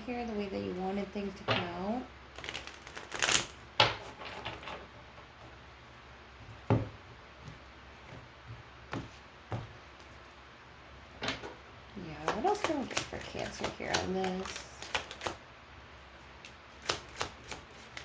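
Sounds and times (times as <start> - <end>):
cards snapping and tapping: 12.2 - 15.4, 16.4 - 18.0.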